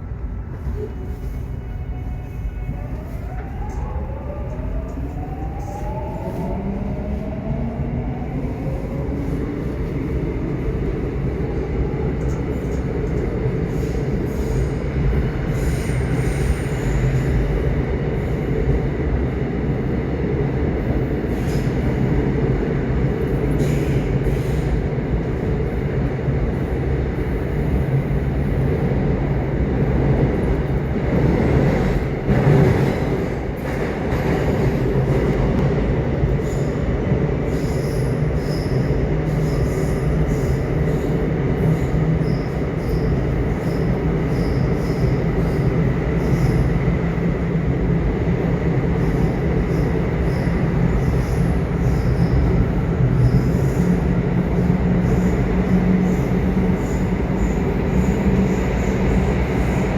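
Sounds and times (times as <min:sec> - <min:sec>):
train wheels rumbling on track: 0:00.0 - 0:59.9
rail joint clicks: 0:12.1 - 0:14.8.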